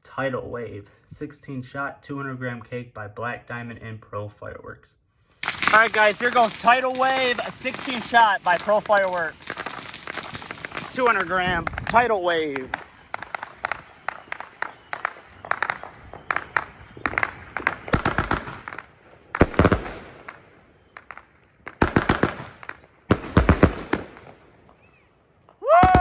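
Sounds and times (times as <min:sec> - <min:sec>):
firework cake popping and crackling: 0:05.4 - 0:26.0.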